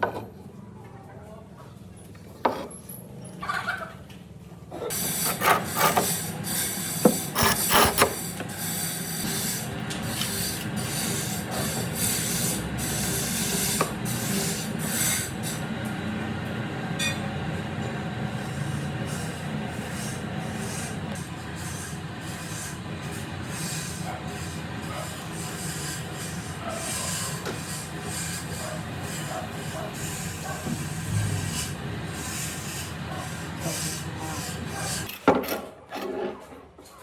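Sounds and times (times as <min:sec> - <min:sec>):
wood scraping: 0:02.3 - 0:02.7, 0:05.1 - 0:06.2, 0:07.1 - 0:08.2.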